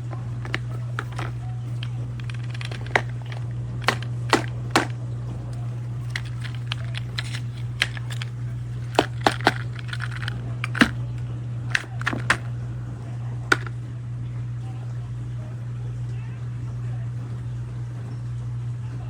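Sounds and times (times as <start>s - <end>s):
steady low hum: 0.0s - 19.0s
plastic toy parts clicking: 0.4s - 4.9s, 6.0s - 11.0s, 11.7s - 12.5s, 13.5s - 13.7s.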